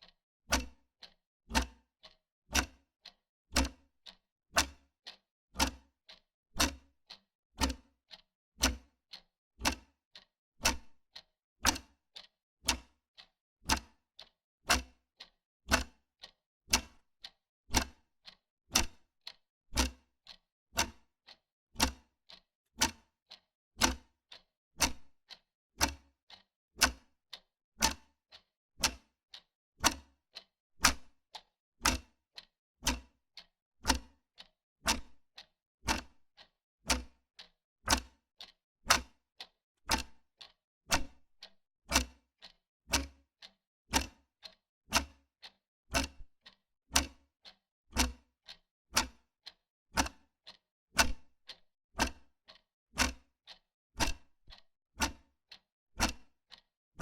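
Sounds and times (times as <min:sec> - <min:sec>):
wall clock ticking: 0:12.7 - 0:12.9, 0:15.7 - 0:15.9, 0:23.8 - 0:24.0, 0:25.8 - 0:27.0, 0:27.8 - 0:29.0, 0:29.8 - 0:30.0, 0:30.8 - 0:33.1, 0:33.8 - 0:37.2, 0:37.9 - 0:39.2, 0:39.9 - 0:42.2, 0:43.4 - 0:48.2, 0:49.0 - 0:55.2.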